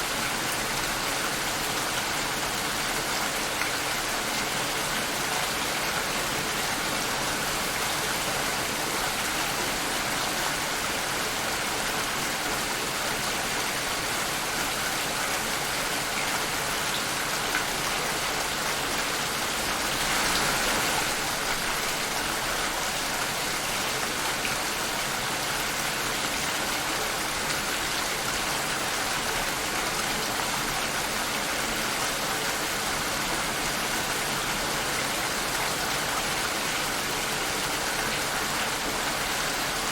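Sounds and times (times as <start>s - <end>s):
rain pattering on a surface: 0.0s - 39.9s.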